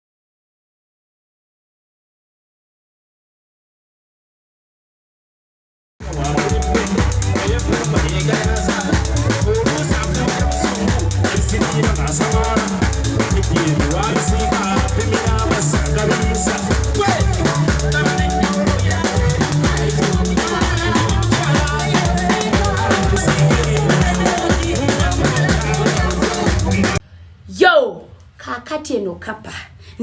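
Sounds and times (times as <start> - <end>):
music with driving drum beat: 6.0 - 27.0.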